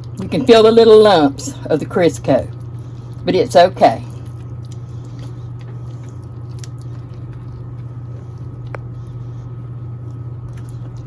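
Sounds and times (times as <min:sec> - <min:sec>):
steady low hum: 0:00.0 - 0:11.0
hands squishing wet dough: 0:04.1 - 0:11.0.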